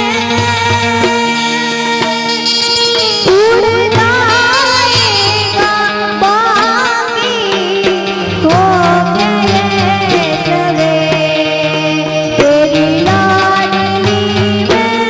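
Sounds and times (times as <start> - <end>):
sustained instrumental backing: 0.0 - 15.0.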